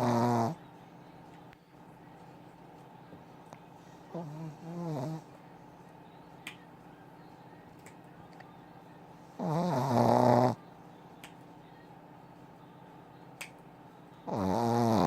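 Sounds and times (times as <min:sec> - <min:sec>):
loud pitched snore: 0:14.3 - 0:15.0.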